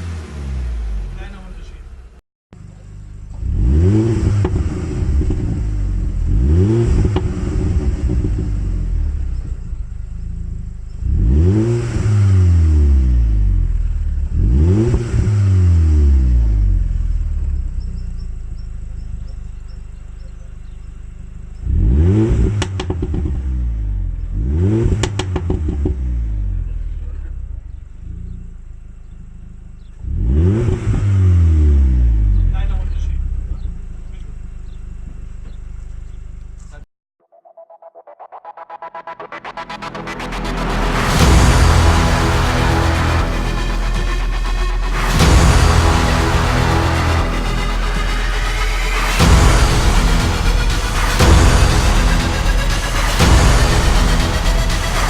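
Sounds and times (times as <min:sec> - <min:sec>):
car engine revving: 0:00.0 - 0:36.8, 0:38.2 - 0:55.0
exhaust crackles and pops: 0:01.1 - 0:12.1, 0:16.3 - 0:31.1, 0:32.3 - 0:36.9.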